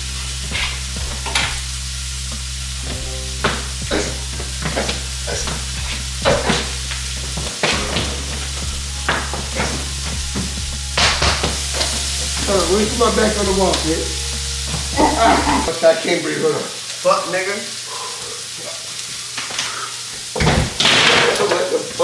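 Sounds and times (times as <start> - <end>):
steady low hum: 0.0 - 15.7.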